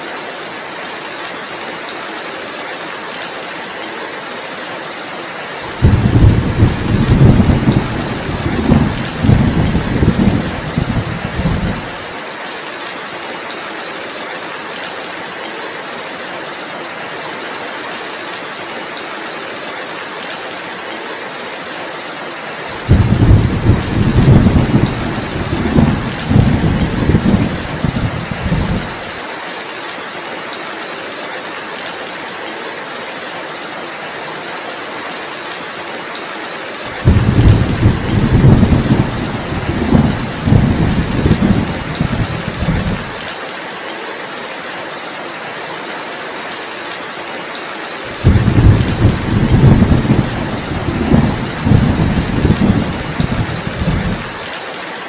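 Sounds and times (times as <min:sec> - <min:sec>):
heavy rain hissing: 0:03.9 - 0:18.6, 0:20.5 - 0:30.2, 0:35.5 - 0:43.5, 0:47.9 - 0:55.0
deep rolling thunder: 0:05.7 - 0:12.0, 0:22.8 - 0:29.0, 0:36.9 - 0:43.2, 0:48.1 - 0:54.4.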